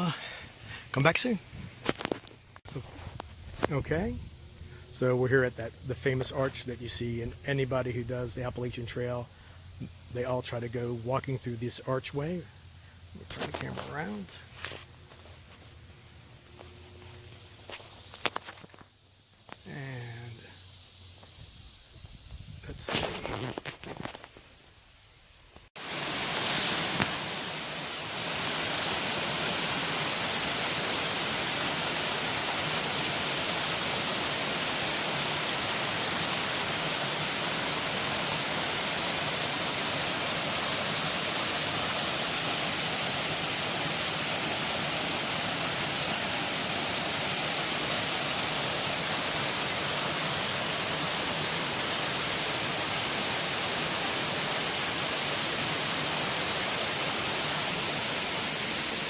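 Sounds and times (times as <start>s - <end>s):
waterfall rushing: 25.8s - 59.0s.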